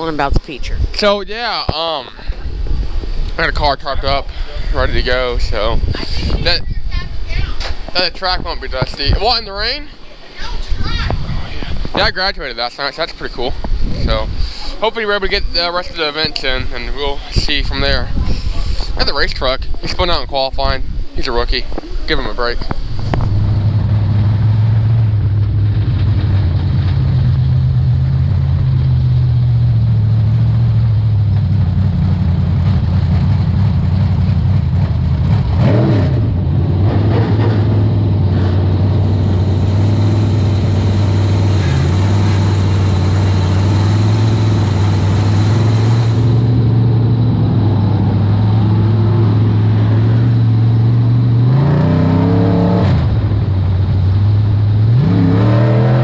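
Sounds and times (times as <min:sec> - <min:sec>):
race car engine revving: 0:21.3 - 0:56.0.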